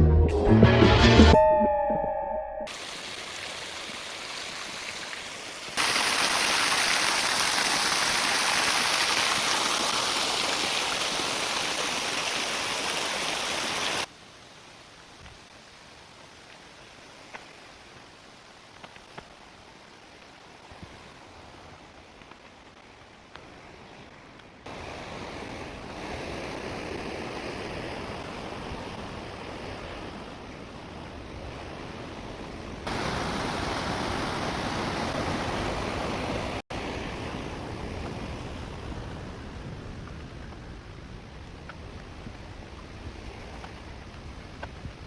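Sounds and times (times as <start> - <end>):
waterfall rushing water: 2.7 - 18.8, 32.8 - 39.7.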